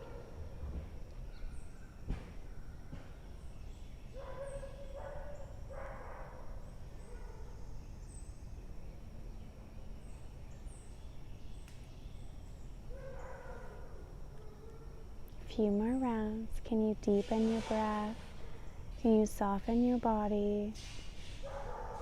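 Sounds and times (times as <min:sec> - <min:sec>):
low background hum: 0:00.0 - 0:22.0.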